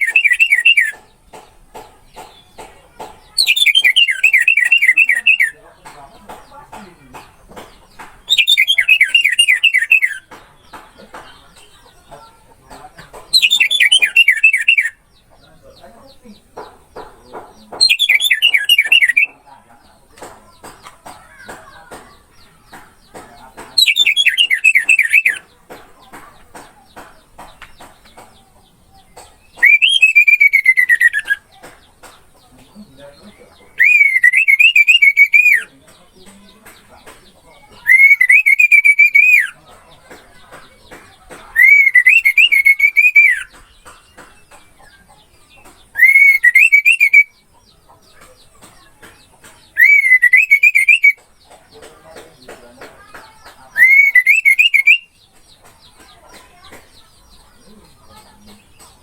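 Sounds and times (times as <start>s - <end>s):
thrush singing whistled phrases: 0.0s - 1.0s, 3.4s - 5.6s, 8.3s - 10.3s, 13.3s - 15.0s, 17.8s - 19.4s, 23.8s - 25.5s, 29.5s - 31.4s, 33.8s - 35.7s, 37.8s - 39.6s, 41.6s - 43.6s, 46.0s - 47.4s, 49.8s - 51.2s, 53.7s - 55.2s.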